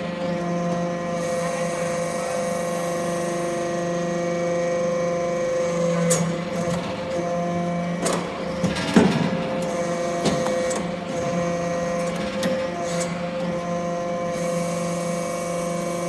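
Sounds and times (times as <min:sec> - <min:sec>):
hydraulic power unit humming: 0:00.0 - 0:16.0.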